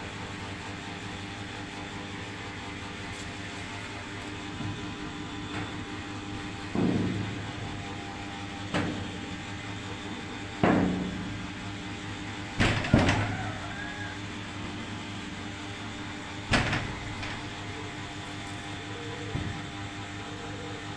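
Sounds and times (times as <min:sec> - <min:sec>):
steady background hum: 0:00.0 - 0:20.9
sharp knocks: 0:10.6 - 0:13.8, 0:16.4 - 0:19.8.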